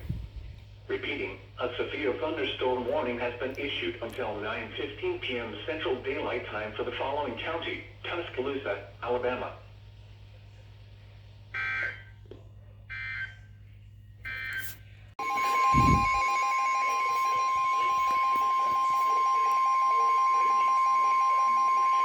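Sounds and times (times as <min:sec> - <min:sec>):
digital data tone bursts: 0:14.3 - 0:22.0
loud steady alert tone: 0:14.3 - 0:22.0.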